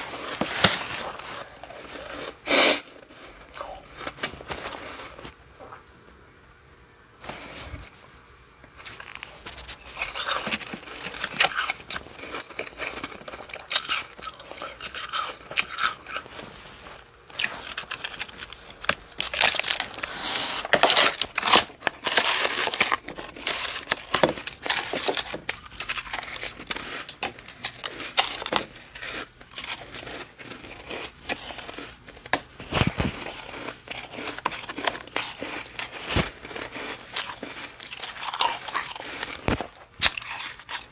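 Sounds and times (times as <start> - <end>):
frost being scraped and crushed: 0.0 - 5.4, 8.8 - 40.9.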